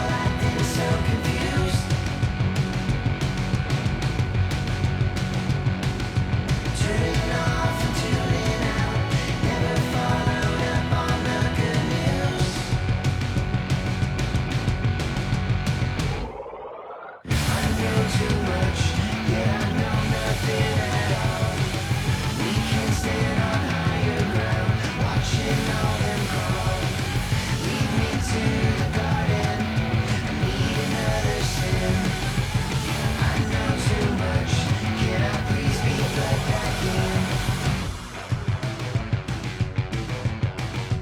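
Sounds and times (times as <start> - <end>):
rock music: 0.0 - 16.4, 17.3 - 41.0.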